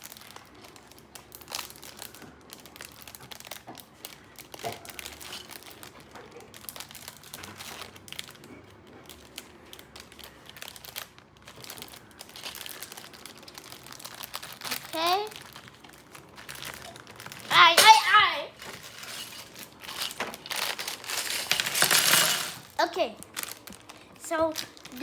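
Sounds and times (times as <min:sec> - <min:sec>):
packaging crinkling and rustling: 0:00.0 - 0:25.0.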